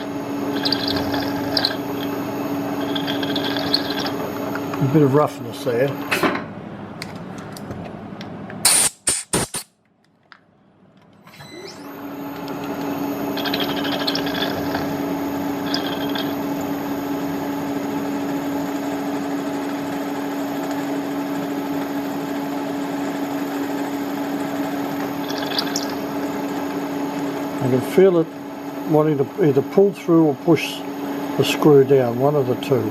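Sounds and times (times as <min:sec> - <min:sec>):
end mill cutting metal: 0:00.0 - 0:05.0
milling machine spindle whine: 0:00.0 - 0:06.1, 0:11.3 - 0:32.9.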